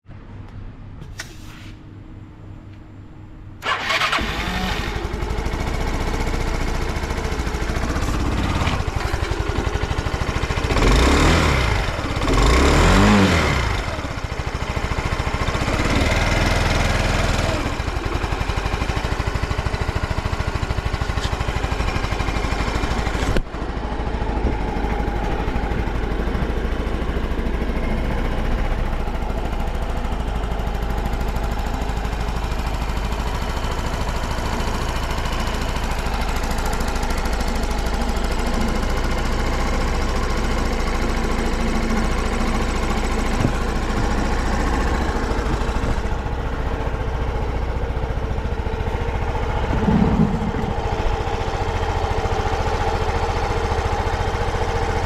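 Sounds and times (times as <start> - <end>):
scooter engine starting and idling: 3.4 - 55.0
scooter throttle blips: 3.6 - 5.6, 43.1 - 52.8.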